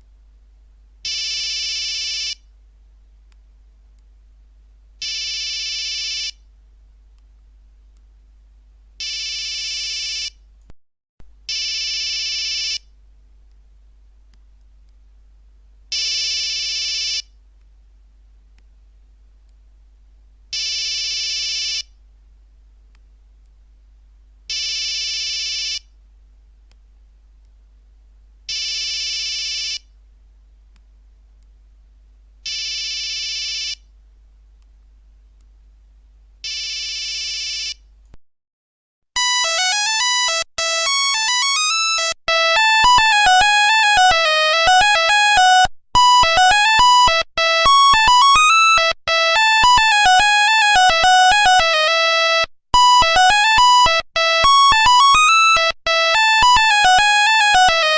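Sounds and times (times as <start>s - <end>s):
monophonic phone ringtone: 39.2s - 52.1s, 52.8s - 57.9s
buzzy electronic beeps: 39.2s - 57.9s.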